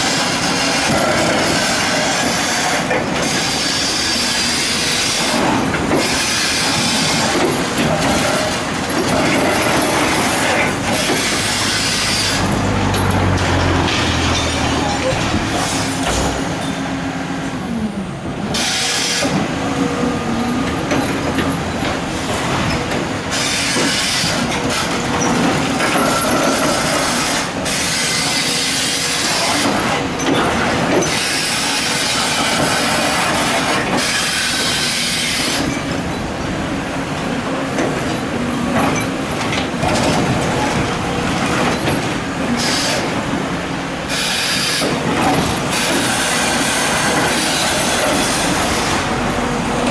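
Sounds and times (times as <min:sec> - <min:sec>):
harsh scraping and clanking: 0:00.0 - 0:16.9
excavator engine and hydraulics: 0:00.0 - 0:49.9.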